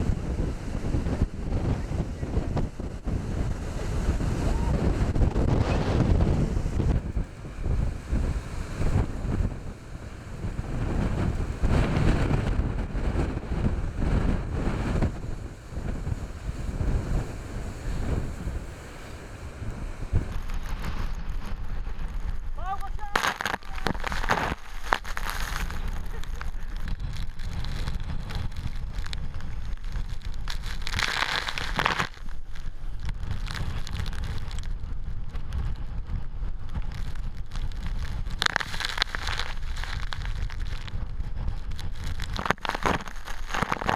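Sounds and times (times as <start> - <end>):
storm waves crashing: 0.0 - 20.5
wind buffeting microphone: 0.0 - 21.3.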